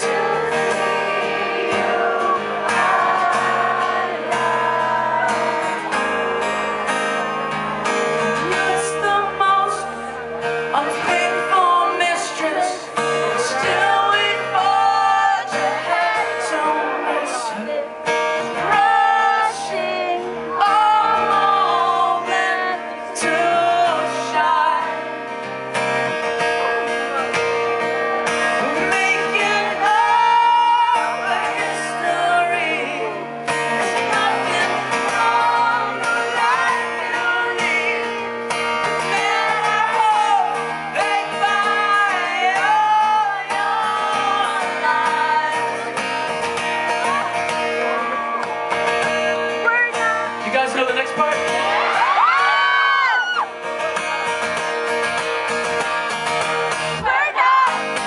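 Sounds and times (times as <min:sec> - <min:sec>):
person singing: 0:00.0 - 0:06.2, 0:07.8 - 0:25.2, 0:27.9 - 0:38.3, 0:38.9 - 0:48.5
acoustic guitar strumming: 0:00.0 - 0:58.0.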